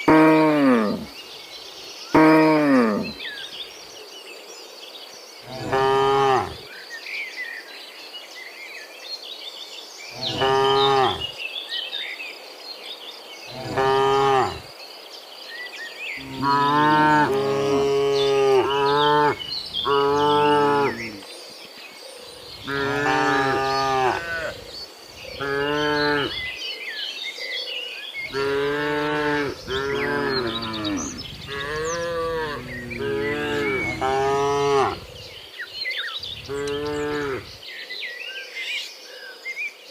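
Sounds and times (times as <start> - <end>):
cattle mooing: 0.0 - 1.1, 2.2 - 3.2, 10.2 - 11.3, 13.5 - 14.6, 16.2 - 21.2, 22.6 - 24.7, 25.3 - 26.4, 28.3 - 35.2, 36.3 - 37.5.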